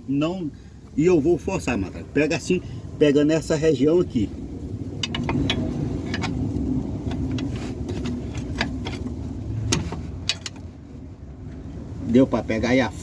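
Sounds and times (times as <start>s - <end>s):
low engine rumble: 0.0s - 13.0s
metallic clicks and knocks: 5.0s - 10.7s.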